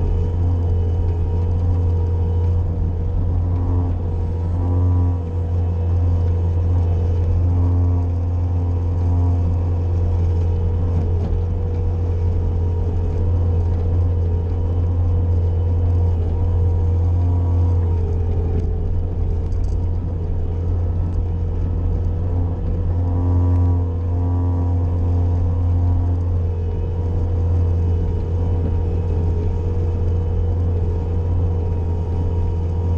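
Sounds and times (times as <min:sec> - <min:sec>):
loader engine running: 0:00.0 - 0:32.9.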